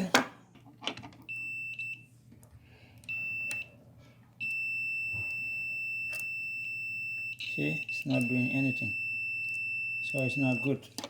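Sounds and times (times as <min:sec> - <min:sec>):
multimeter continuity beeping: 0:01.3 - 0:02.1, 0:03.0 - 0:03.8, 0:04.4 - 0:11.0.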